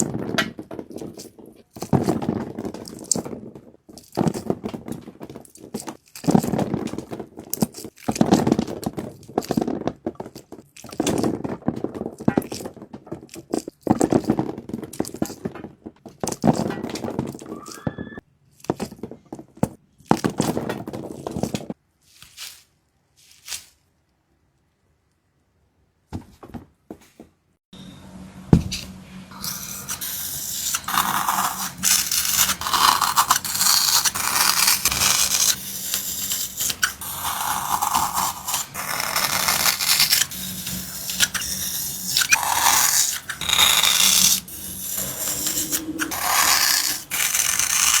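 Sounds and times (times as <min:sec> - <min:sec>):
scraping and rasping: 0:29.3 - 0:48.0.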